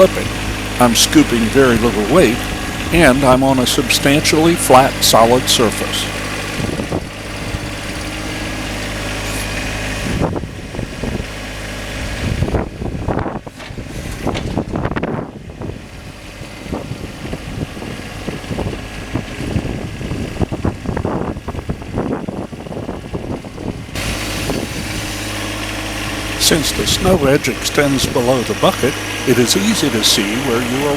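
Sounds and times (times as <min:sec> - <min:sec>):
tractor diesel engine running: 0:00.0 - 0:30.9
knocks and scrapes: 0:13.5 - 0:14.8.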